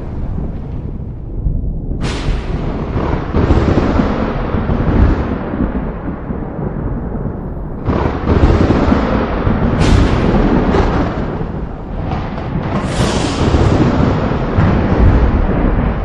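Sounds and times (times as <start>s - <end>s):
deep boom with rumble: 0.0s - 16.0s.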